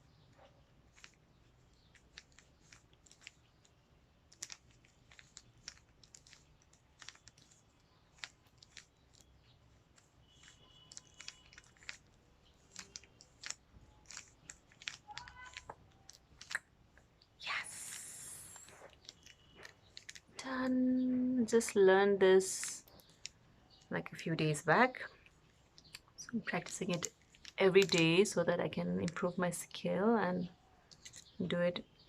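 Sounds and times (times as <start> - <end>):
puzzle cube layers clicking: 0.9 - 9.3, 9.9 - 16.6, 17.9 - 20.3, 25.8 - 29.4.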